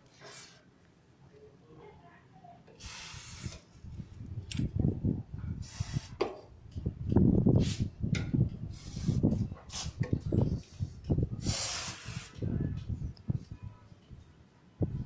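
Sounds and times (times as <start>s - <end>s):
aerosol can spraying: 2.8s - 3.6s, 5.6s - 6.2s, 8.7s - 10.0s, 11.4s - 12.4s.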